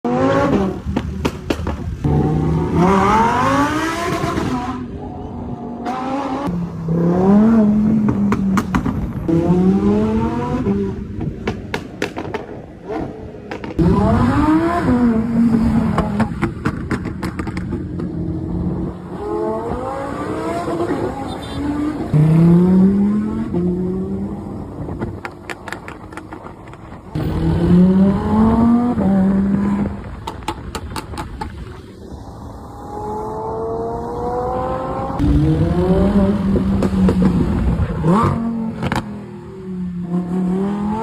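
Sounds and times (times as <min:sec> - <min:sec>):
car engine revving: 0:00.0 - 0:04.9, 0:13.0 - 0:24.8, 0:27.2 - 0:30.2
exhaust crackles and pops: 0:16.0 - 0:18.2, 0:24.9 - 0:27.2.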